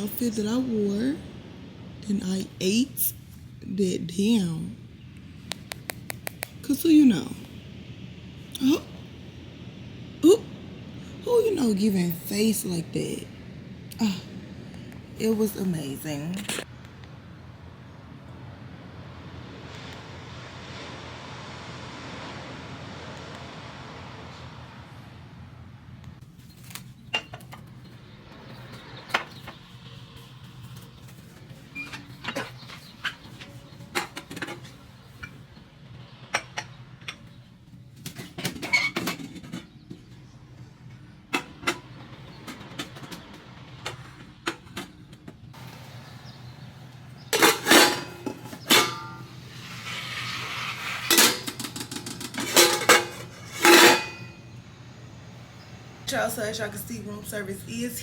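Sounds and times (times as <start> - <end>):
steady low hum: 0.0 - 58.0
dishes and cutlery clinking: 51.1 - 54.3.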